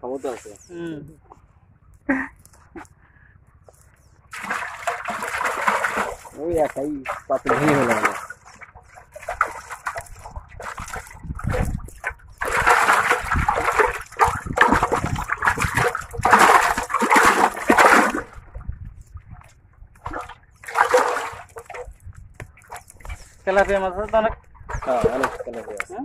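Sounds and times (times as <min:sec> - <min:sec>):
pond water splashing: 0:03.6 - 0:26.0.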